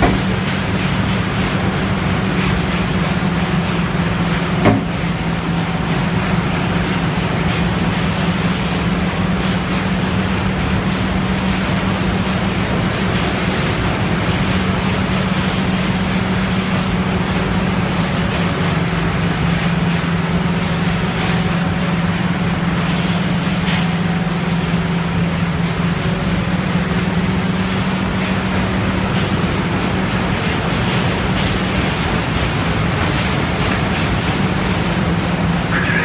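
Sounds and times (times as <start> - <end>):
baler machine drone: 32.6 - 36.0.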